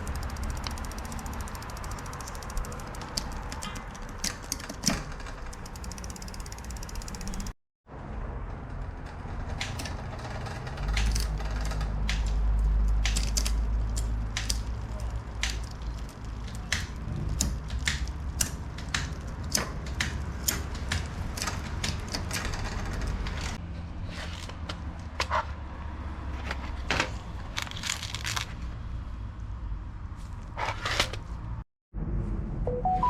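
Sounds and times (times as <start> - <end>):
bicycle mechanical clicks: 0.0 - 7.6, 8.5 - 23.6.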